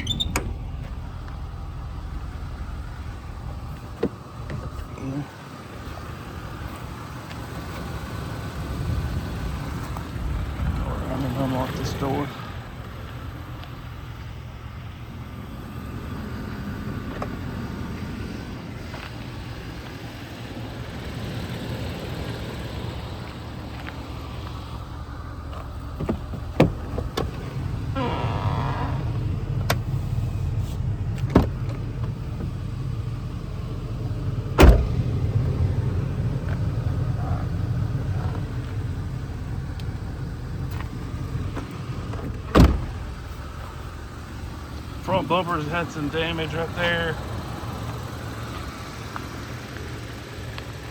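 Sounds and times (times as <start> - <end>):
truck door latch clicks and knock: 0.0 - 1.4, 34.6 - 35.0, 42.1 - 43.0
low steady rumble: 0.0 - 50.9.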